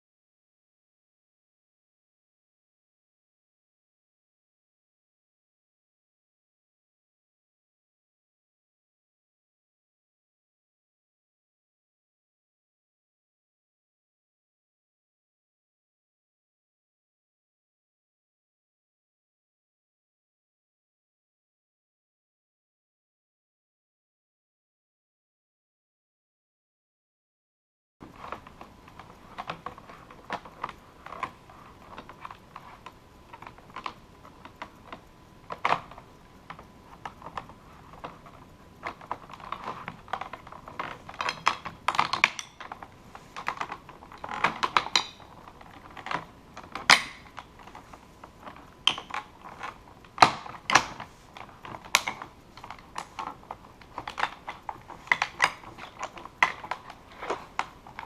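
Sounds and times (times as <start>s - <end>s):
plastic keyboard clicks and knocks: 28.0s - 58.0s.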